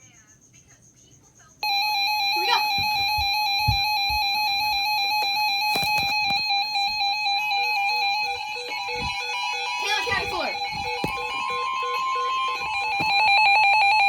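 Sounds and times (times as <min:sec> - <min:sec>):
gliding chirps: 0:01.6 - 0:14.0
two-tone alert tone: 0:01.6 - 0:14.0
low thumps: 0:05.9 - 0:14.0.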